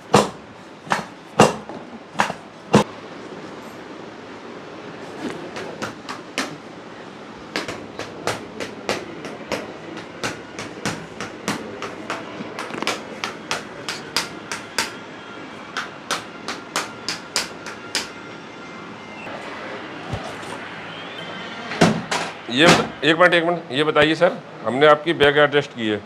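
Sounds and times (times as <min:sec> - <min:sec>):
spine clicking and cracking: 0:07.6 - 0:15.0.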